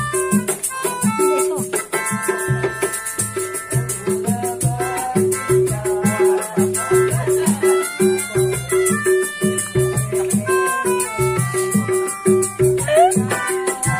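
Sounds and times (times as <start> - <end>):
fast percussion beat: 0.0 - 13.9
melodica playing held notes: 0.0 - 13.9
shaker rattle: 0.0 - 13.9.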